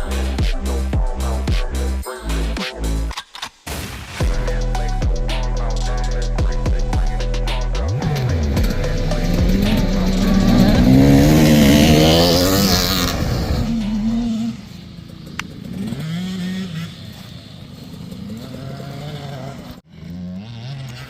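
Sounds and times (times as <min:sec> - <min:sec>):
dirt bike engine revving: 0:04.2 - 0:21.0.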